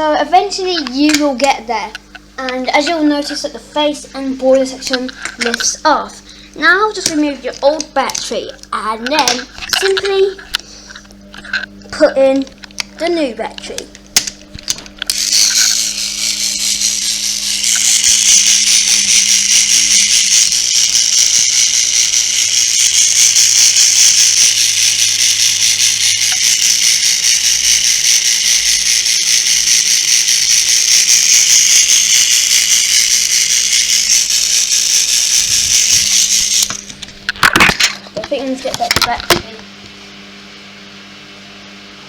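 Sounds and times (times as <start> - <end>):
toy train motor whirring: 0.0 - 39.5.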